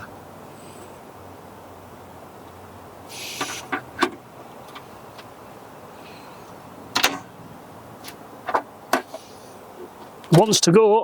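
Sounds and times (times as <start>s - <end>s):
sharp clicks and knocks: 6.9s - 7.3s.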